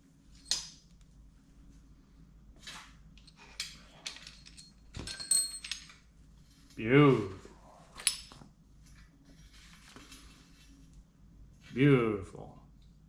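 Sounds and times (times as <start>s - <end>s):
metal tools clinking: 3.2s - 6.0s.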